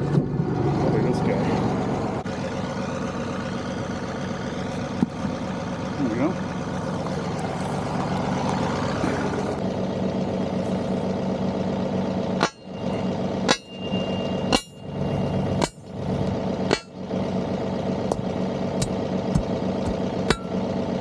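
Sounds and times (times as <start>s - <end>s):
tractor diesel engine idling: 0.0s - 21.0s
high metallic ring: 12.4s - 15.9s, 20.3s - 20.6s
tool hammering stones: 13.5s - 13.8s, 14.5s - 14.8s, 16.7s - 16.9s, 18.1s - 20.6s.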